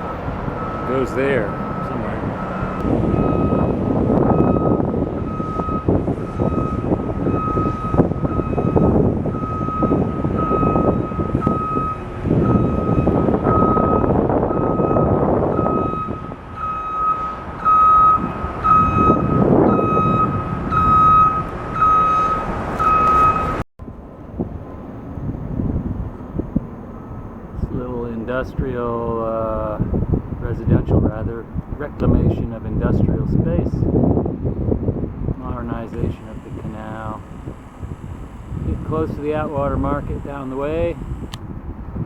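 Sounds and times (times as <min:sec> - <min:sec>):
vehicle reversing alarm beeping: 0:00.0 - 0:23.6, 0:35.6 - 0:41.4
rumbling engine and machinery: 0:00.0 - 0:42.0.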